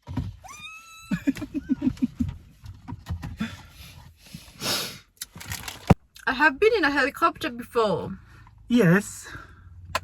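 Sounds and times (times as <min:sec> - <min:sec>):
woman squealing: 0:00.4 - 0:01.8
woman laughing breathily: 0:01.1 - 0:02.4.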